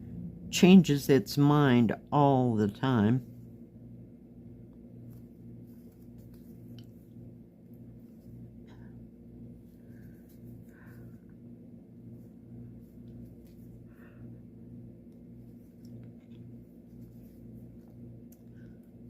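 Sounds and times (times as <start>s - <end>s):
low hum: 0.0s - 19.0s
needle and floss through cloth: 15.4s - 18.6s.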